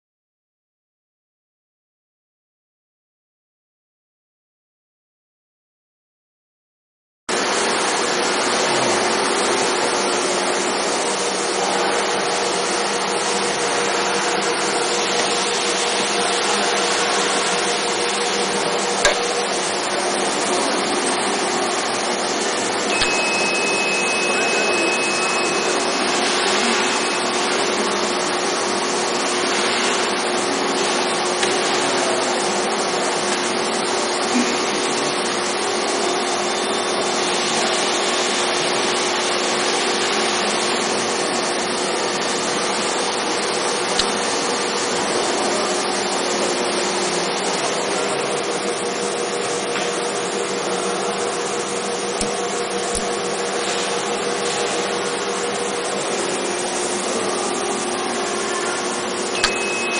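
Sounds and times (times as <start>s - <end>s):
surface grinder humming: 7.3s - 59.9s
high beep: 22.9s - 27.5s, 59.4s - 59.9s.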